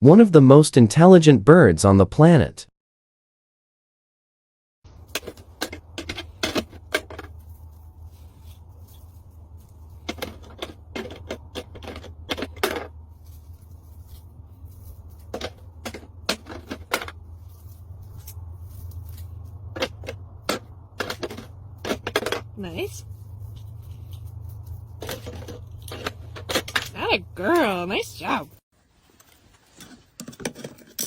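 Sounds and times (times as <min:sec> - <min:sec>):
steady low hum: 0:04.9 - 0:28.6.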